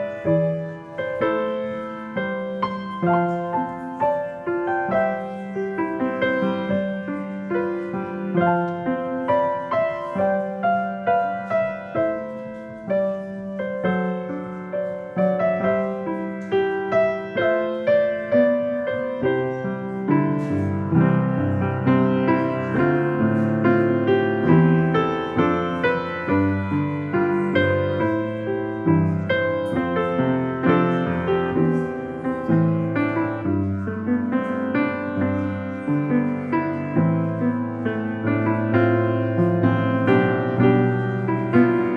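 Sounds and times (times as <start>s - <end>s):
piano piece: 0.0s - 41.9s.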